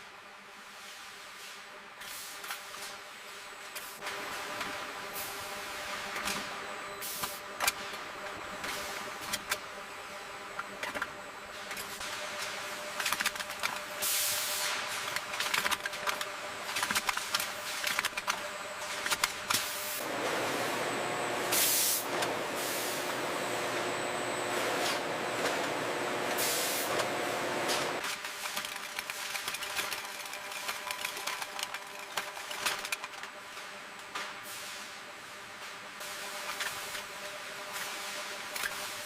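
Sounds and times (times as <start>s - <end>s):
machinery hum: 3.3s - 28.0s
short hisses of air or steam: 21.5s - 23.1s, 26.3s - 26.9s.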